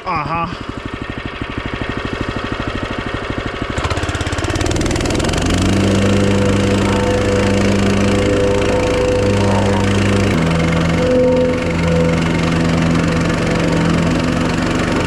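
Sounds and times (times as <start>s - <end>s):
small gas engine revving: 0.8s - 15.0s.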